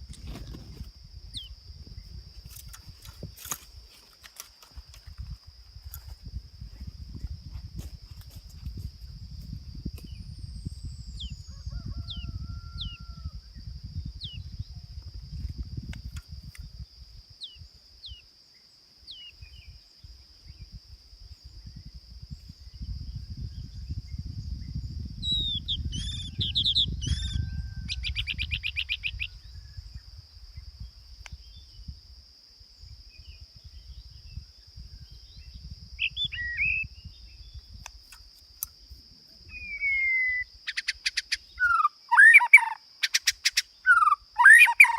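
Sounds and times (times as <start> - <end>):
bird trilling song: 1.3 - 1.6, 24.6 - 29.7, 35.2 - 37.6, 39.5 - 44.9
songbirds chirping: 16.5 - 20.7.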